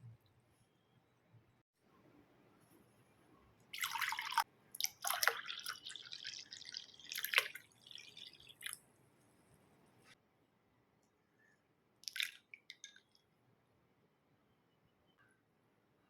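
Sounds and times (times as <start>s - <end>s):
liquid splashing and dripping: 3.7s - 8.8s, 12.0s - 13.2s.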